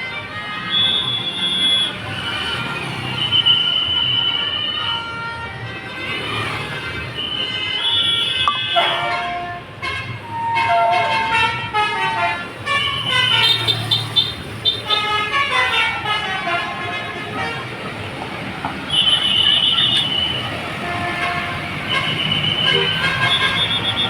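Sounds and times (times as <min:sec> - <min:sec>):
bus horn playing a tune: 0:04.6 - 0:18.0, 0:18.9 - 0:24.0.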